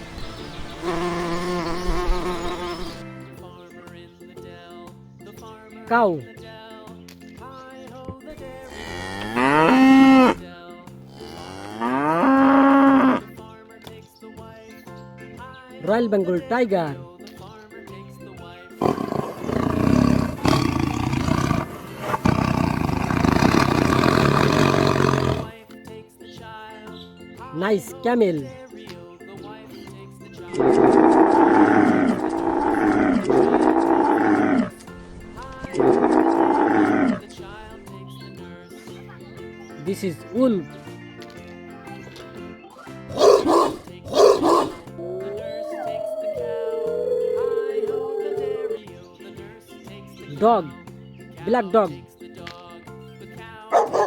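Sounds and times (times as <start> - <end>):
light background music: 0.0 - 54.0
camel bellowing: 0.7 - 3.4, 8.4 - 10.5, 11.1 - 13.3, 18.8 - 25.6, 30.5 - 34.9, 35.5 - 37.3, 43.0 - 48.8, 53.7 - 54.0
cow mooing: 0.8 - 3.0, 8.6 - 10.4, 11.1 - 13.3, 18.8 - 25.6, 30.6 - 34.8, 35.8 - 37.2, 43.1 - 48.8.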